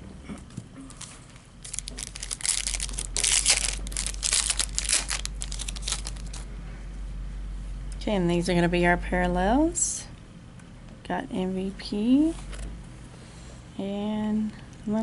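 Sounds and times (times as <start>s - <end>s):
plastic wrapper crinkling: 0.9s - 6.4s.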